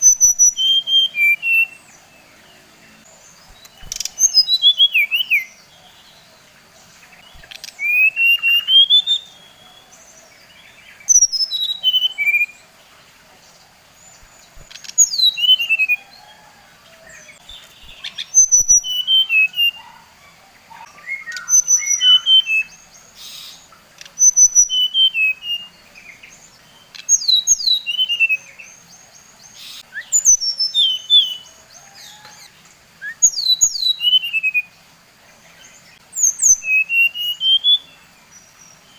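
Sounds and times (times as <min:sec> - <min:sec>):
bird whistled song: 0:00.0 - 0:02.0, 0:03.4 - 0:05.6, 0:07.2 - 0:10.0, 0:10.9 - 0:12.6, 0:14.2 - 0:16.4, 0:17.1 - 0:20.0, 0:20.7 - 0:26.2, 0:26.9 - 0:28.8, 0:29.5 - 0:34.7, 0:36.1 - 0:38.0.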